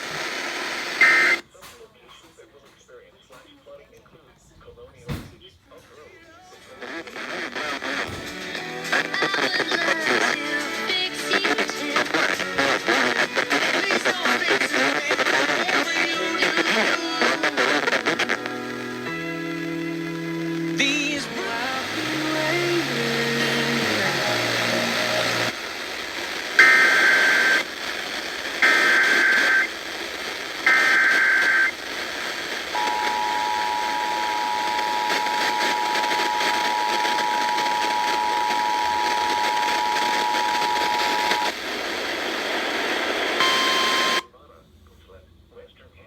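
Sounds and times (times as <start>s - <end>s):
music on radio: 0.0s - 44.5s
radio hiss: 0.0s - 46.0s
two-tone attention signal: 43.4s - 44.3s.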